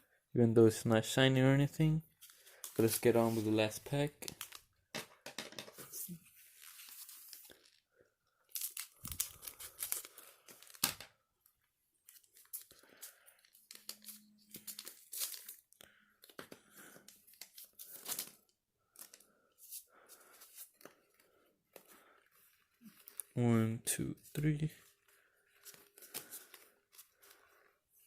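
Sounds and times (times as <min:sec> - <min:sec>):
foil wrapper tearing and crinkling: 0:08.5 - 0:11.0, 0:12.1 - 0:15.6.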